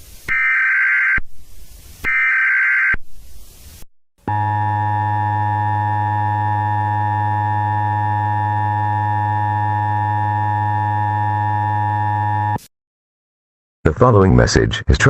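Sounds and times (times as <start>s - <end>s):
electronic alarm tone: 0.3s - 1.2s, 2.1s - 3.0s, 4.3s - 12.6s.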